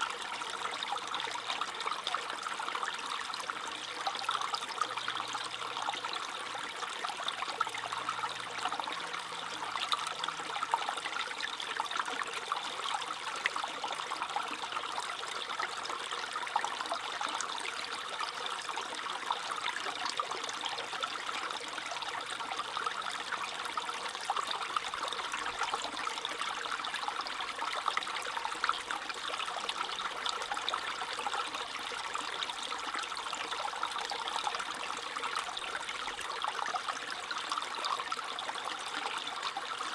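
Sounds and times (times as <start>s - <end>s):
stream babbling over stones: 0.0s - 39.9s.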